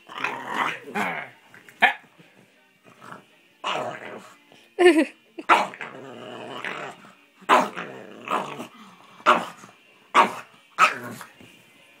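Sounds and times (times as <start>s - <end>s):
dog growling: 0.0s - 1.4s, 2.9s - 4.4s, 5.4s - 11.3s
dog barking: 1.8s - 2.1s, 10.2s - 11.0s.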